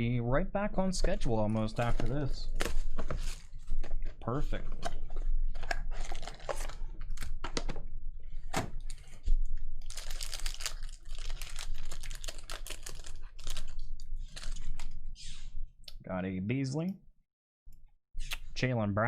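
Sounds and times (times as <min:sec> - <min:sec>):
card packs tearing open: 0:05.6 - 0:07.4, 0:09.8 - 0:14.9
wrapper crinkling: 0:05.6 - 0:07.4, 0:09.8 - 0:15.0.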